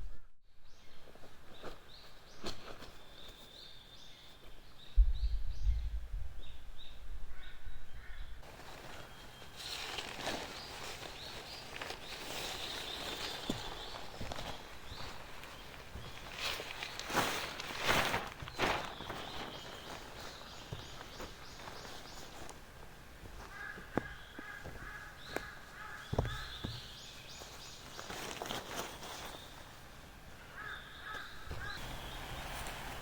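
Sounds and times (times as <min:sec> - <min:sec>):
birds chirping: 0:00.6 - 0:33.0
harsh caw-like bird calls: 0:07.3 - 0:08.4, 0:23.4 - 0:26.8, 0:30.4 - 0:32.2.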